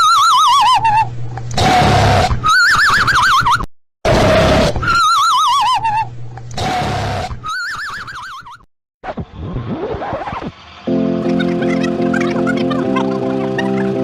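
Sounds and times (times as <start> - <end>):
warbling whinny-like animal call: 0.0 - 8.6.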